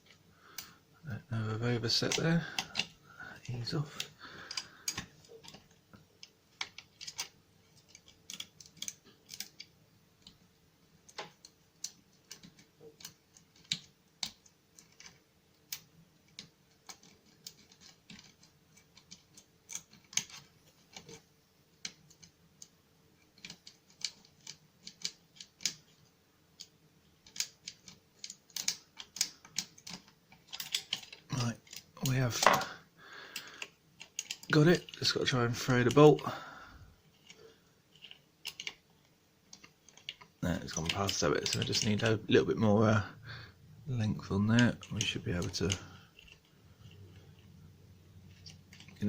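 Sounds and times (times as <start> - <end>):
lock pick clicks and scrapes: 26.6 - 32.6, 37.1 - 38.8.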